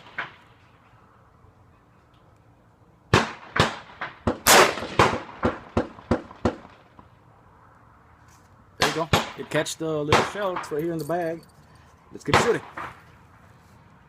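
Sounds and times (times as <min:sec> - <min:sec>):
rifle gunshots: 0:03.1 - 0:06.9.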